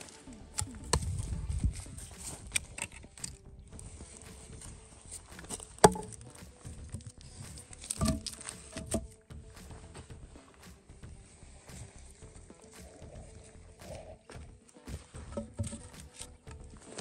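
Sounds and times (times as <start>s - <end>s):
rustling: 0.0s - 10.6s
firewood knocking: 4.2s - 10.2s, 14.4s - 16.4s.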